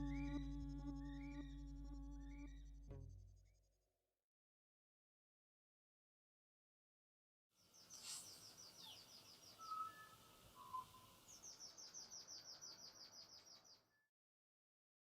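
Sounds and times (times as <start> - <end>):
lower whistled bird notes: 0.0 - 2.6, 7.8 - 13.6.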